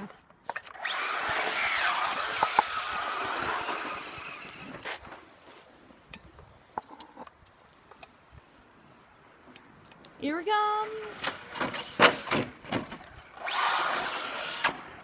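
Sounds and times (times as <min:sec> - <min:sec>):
toy truck motor whining: 0:00.7 - 0:04.8, 0:13.3 - 0:15.0.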